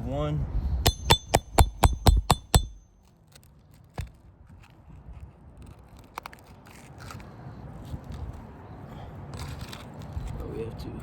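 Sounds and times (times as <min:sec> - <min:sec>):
quick taps: 0:00.9 - 0:02.8
metal tool knocking on shingles: 0:00.9 - 0:03.0.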